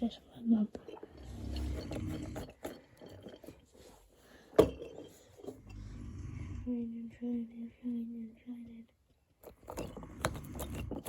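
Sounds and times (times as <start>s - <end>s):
man snoring: 5.7s - 6.7s.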